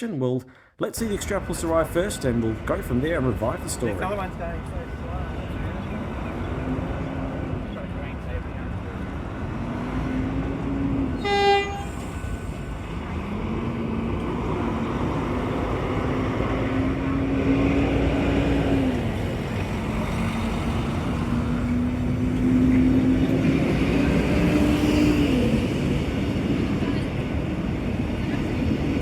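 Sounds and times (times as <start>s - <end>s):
road traffic: 1.0s - 29.0s
train horn blast: 10.1s - 12.3s.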